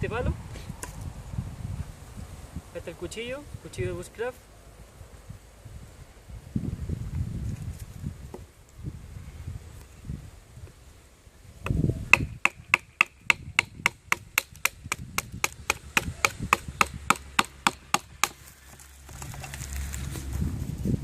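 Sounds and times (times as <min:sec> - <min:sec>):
handling noise: 0:17.2 - 0:20.8.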